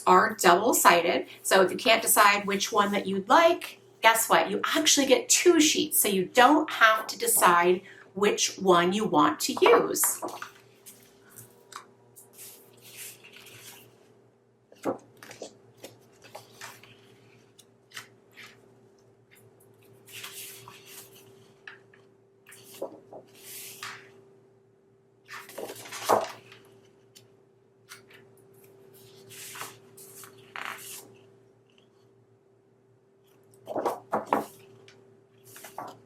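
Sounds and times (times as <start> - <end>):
faint steady hum: 0.0 - 36.0
paper sliding and rustling: 12.2 - 14.1, 14.8 - 18.6, 20.0 - 21.6, 22.5 - 24.1, 25.3 - 27.0, 28.9 - 31.2, 35.4 - 36.0.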